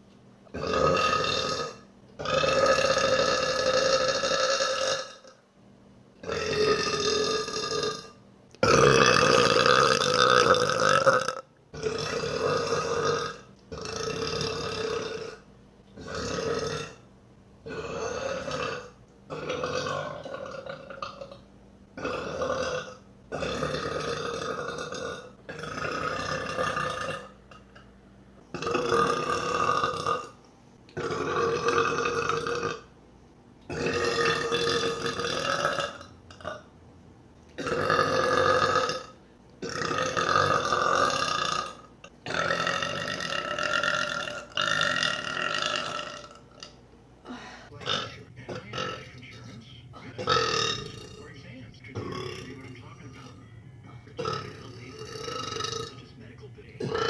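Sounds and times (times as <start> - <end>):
woman burping: 6.2 - 15.4, 37.6 - 49.0, 50.0 - 51.2, 54.2 - 56.0, 56.8 - 57.0.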